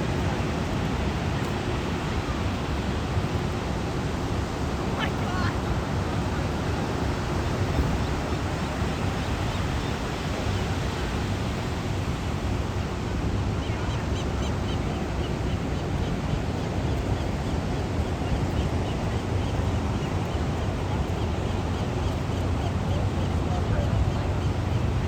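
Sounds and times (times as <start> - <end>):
ocean surf rushing: 0.0 - 13.8
seabird calls: 3.9 - 10.8, 13.5 - 25.0.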